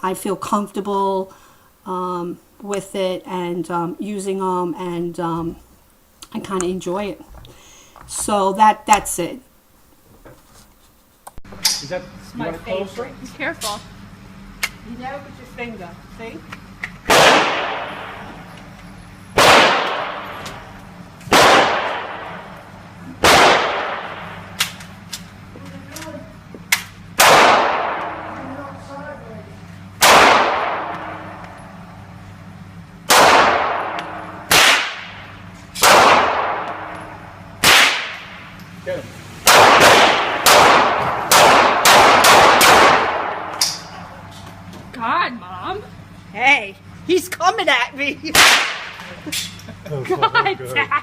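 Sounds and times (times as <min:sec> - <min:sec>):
rifle shots echoing: 0:17.1 - 0:18.4, 0:19.4 - 0:20.7, 0:21.3 - 0:22.6, 0:23.2 - 0:24.8, 0:27.2 - 0:28.4, 0:30.0 - 0:31.4, 0:33.1 - 0:38.5, 0:39.4 - 0:44.0, 0:48.3 - 0:49.0.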